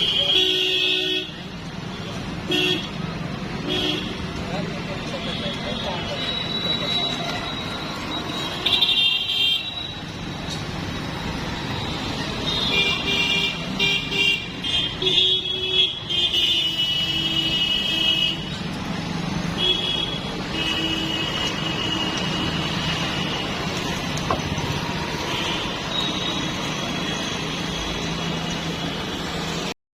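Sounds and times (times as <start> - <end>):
vehicle horns honking: 0.0 - 1.4, 2.4 - 3.0, 3.6 - 4.3, 19.6 - 23.5
traffic engines running: 0.0 - 29.8.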